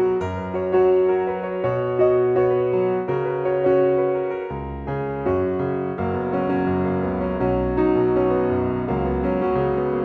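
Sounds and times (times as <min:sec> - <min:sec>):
keyboard chords: 0:00.0 - 0:10.0.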